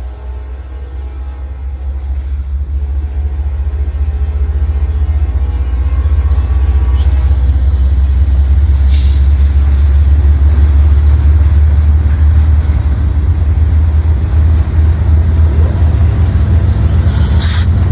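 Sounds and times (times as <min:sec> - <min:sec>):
freight train rumbling on rails: 0:00.0 - 0:17.9
high wheel squeals: 0:06.2 - 0:10.6.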